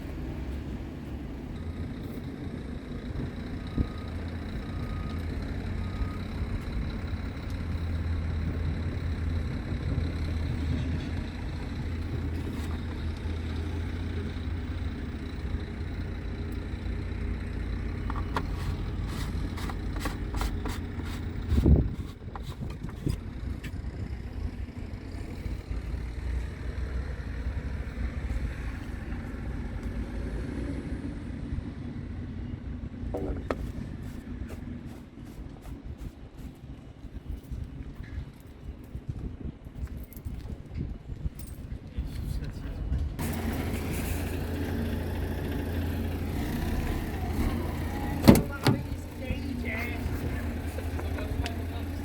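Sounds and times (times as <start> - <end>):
diesel truck engine idling: 0.0 - 35.9, 43.2 - 52.0
thump: 48.2 - 48.8.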